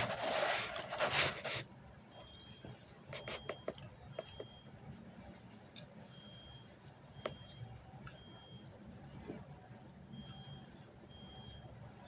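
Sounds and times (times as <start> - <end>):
rustling noise: 0.0 - 1.7
person chewing food: 3.2 - 4.5, 6.8 - 8.3.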